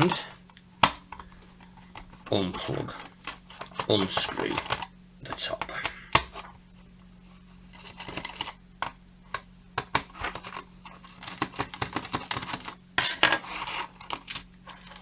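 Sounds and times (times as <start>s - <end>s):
tool scraping plastic case: 10.1s - 15.0s.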